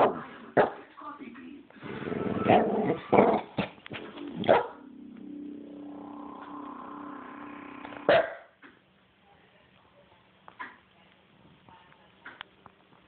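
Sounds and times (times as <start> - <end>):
dog barking: 0.0 - 0.8, 4.5 - 4.8, 8.1 - 8.6
steady low drone: 4.0 - 8.1.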